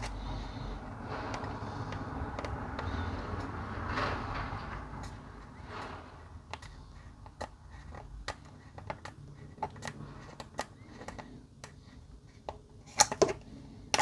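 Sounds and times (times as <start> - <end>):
plastic parts clicking and tapping: 1.3 - 3.5, 6.4 - 14.0.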